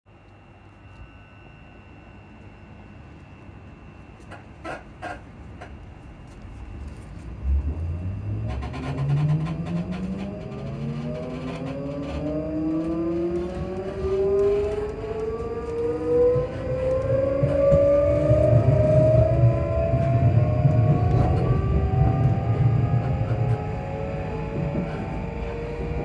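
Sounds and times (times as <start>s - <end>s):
train traction motors humming: 0.2s - 26.0s
low rumble: 5.9s - 26.0s.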